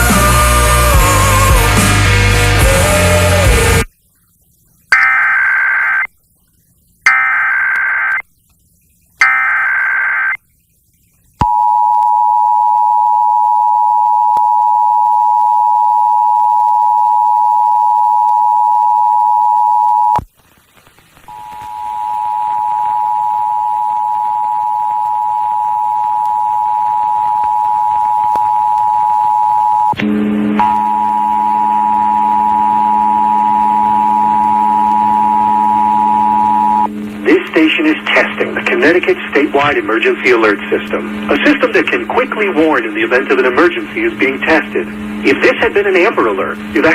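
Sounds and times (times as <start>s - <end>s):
data bursts: 4.9s - 6.1s, 7.0s - 8.2s, 9.2s - 10.4s
two-tone attention signal: 4.9s - 6.1s, 7.1s - 8.2s, 9.2s - 10.4s, 21.3s - 30.0s, 30.6s - 36.9s
low steady tone: 21.3s - 37.2s.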